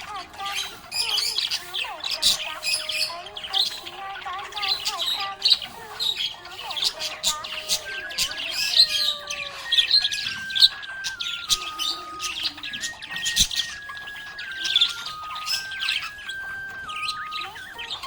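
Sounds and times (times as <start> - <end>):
budgerigar chirping: 0.0 - 18.0
simple tune of held notes: 0.0 - 18.0.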